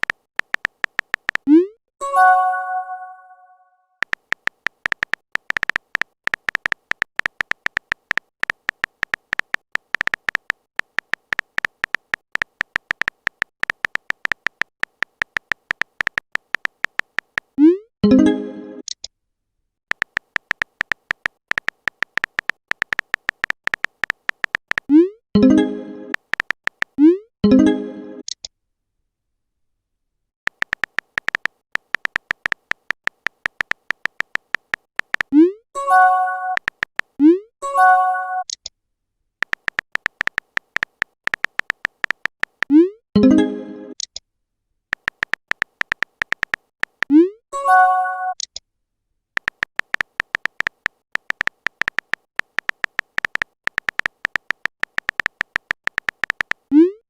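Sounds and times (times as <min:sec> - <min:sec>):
phone keyboard typing clicks: 0:00.0 - 0:01.6, 0:04.0 - 0:17.7, 0:19.9 - 0:27.1, 0:30.5 - 0:37.4, 0:39.4 - 0:42.9, 0:44.9 - 0:47.2, 0:49.4 - 0:56.8
message notification chime: 0:02.0 - 0:03.6
electronic chat chime: 0:02.0 - 0:03.7, 0:35.8 - 0:36.7, 0:37.6 - 0:38.5, 0:47.6 - 0:48.4.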